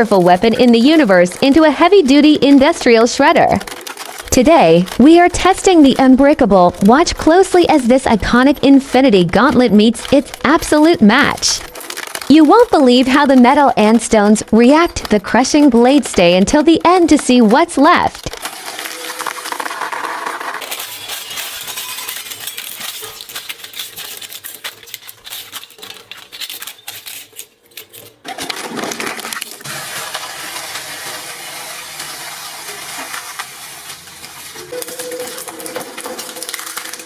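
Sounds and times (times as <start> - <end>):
shredder crushing metal and stones: 0.4 - 6.4, 18.2 - 25.1, 28.1 - 37.0.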